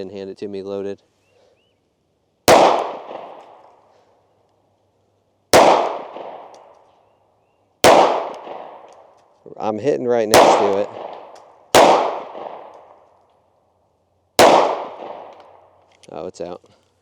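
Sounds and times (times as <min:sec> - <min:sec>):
pistol shots: 0:02.5 - 0:03.7, 0:05.5 - 0:06.7, 0:07.8 - 0:09.0, 0:10.3 - 0:13.0, 0:14.4 - 0:15.6.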